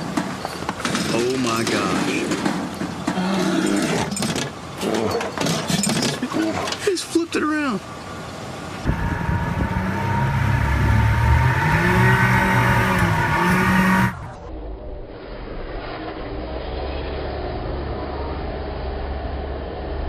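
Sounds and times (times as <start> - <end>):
low engine rumble: 6.1 - 20.0
vehicle engine revving: 8.8 - 14.5.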